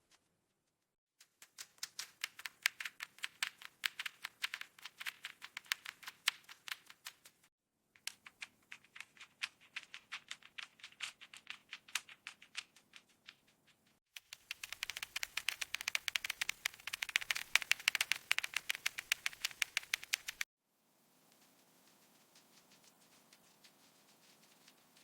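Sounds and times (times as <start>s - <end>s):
mechanical keyboard clicking: 14.2s - 20.4s.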